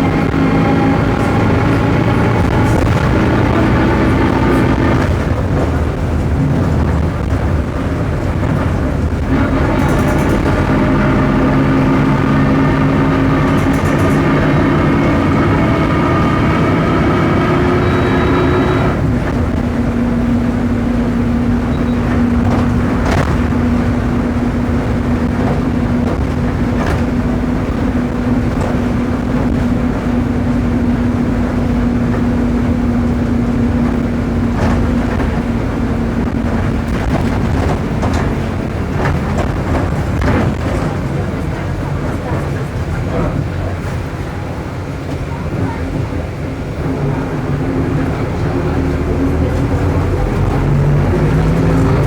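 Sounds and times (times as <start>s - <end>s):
bus diesel engine pulling: 0.0s - 52.0s
differential whine: 9.2s - 19.6s
bus body knocks: 21.7s - 30.2s, 33.7s - 43.7s.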